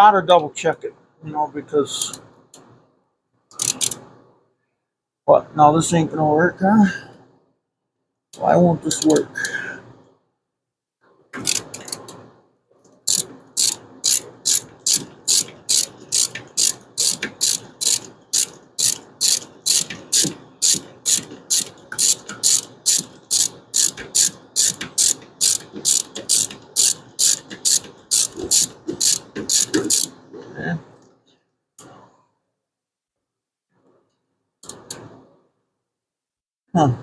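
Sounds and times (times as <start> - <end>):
socket ratchet clicking: 3.5 - 4.0, 11.4 - 12.2, 13.1 - 30.1.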